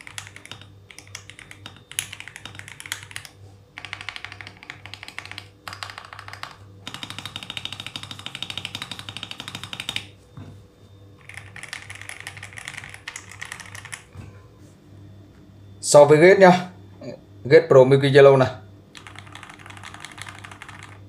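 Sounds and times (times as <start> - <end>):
rapid mechanical keyboard typing: 0.0 - 10.1, 11.2 - 14.1, 19.0 - 21.0.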